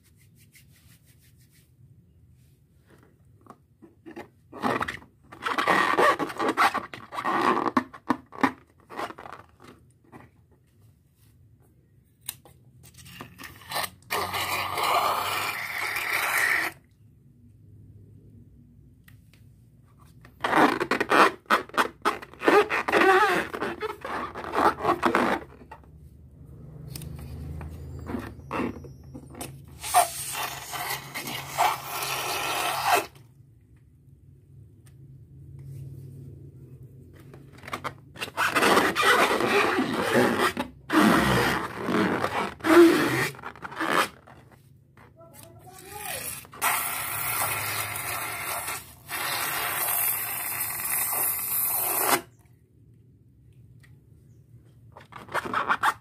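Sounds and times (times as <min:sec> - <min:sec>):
rubber balloons squeaking: 0:03.9 - 0:09.8, 0:13.5 - 0:16.8, 0:20.3 - 0:25.9, 0:27.4 - 0:33.2, 0:37.5 - 0:52.4, 0:54.3 - 0:56.0.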